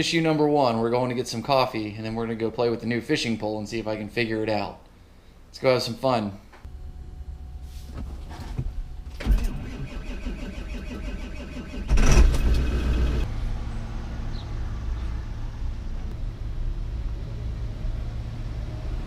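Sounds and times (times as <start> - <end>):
car engine starting and running: 6.7 - 19.0.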